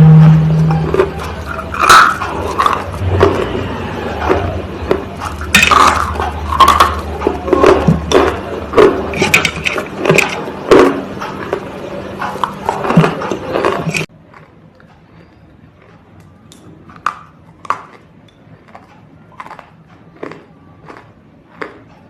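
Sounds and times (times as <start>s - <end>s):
brittle material crunching: 0.6s - 14.5s.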